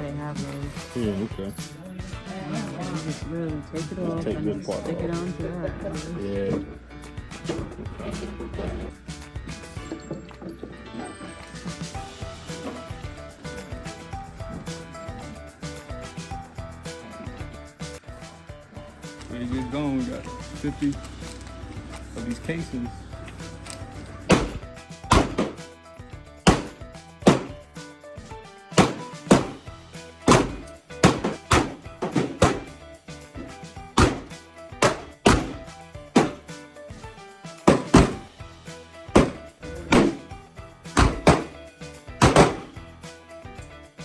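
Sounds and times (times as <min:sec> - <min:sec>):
funk background music: 0:00.0 - 0:44.0
handgun shots echoing: 0:24.3 - 0:25.6, 0:26.5 - 0:27.6, 0:28.8 - 0:29.6, 0:30.3 - 0:32.7, 0:40.0 - 0:40.2, 0:41.0 - 0:41.6, 0:42.2 - 0:42.7.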